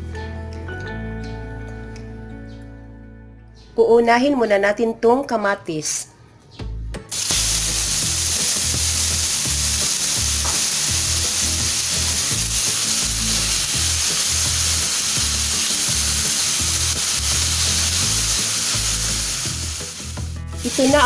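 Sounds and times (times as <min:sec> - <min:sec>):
food frying in hot oil: 0:07.1 - 0:21.0.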